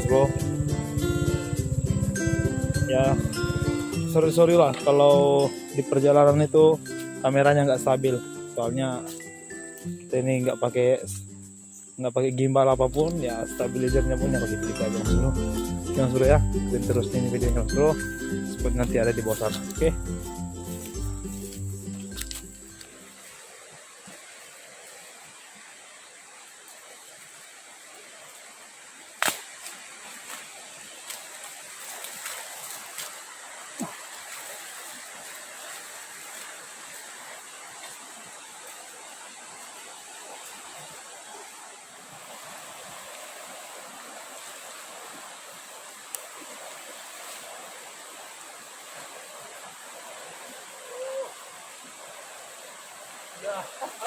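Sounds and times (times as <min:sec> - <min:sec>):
thin high tone: 0:00.0 - 0:23.4
forest stream rushing: 0:00.0 - 0:54.0.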